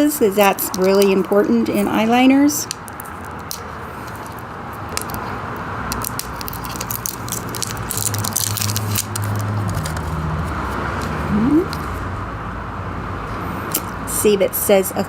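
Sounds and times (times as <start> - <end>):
packaging crackling and rattling: 0.4 - 2.0, 2.6 - 5.3, 5.9 - 12.0.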